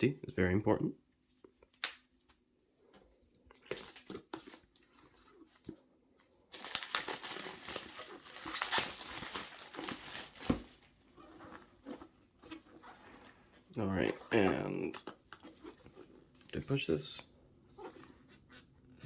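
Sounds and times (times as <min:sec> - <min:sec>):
packaging crinkling and tearing: 0:03.6 - 0:05.5, 0:06.4 - 0:10.8.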